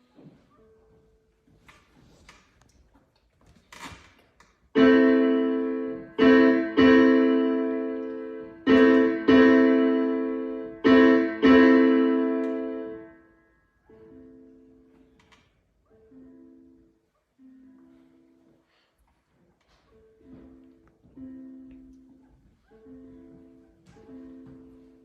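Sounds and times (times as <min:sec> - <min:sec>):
piano chords ringing: 0:04.8 - 0:15.2, 0:20.0 - 0:25.0.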